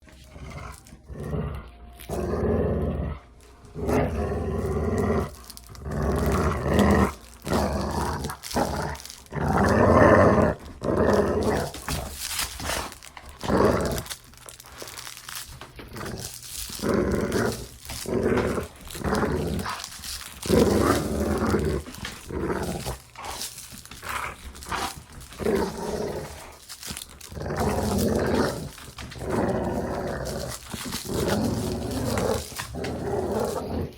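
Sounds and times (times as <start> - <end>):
dog growling: 0.0 - 33.9.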